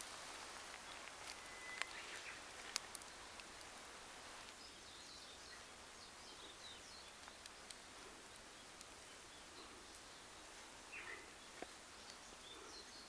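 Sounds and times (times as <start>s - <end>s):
wood fire crackling: 0.0s - 13.0s
bird chirping: 0.8s - 2.5s, 8.3s - 13.0s.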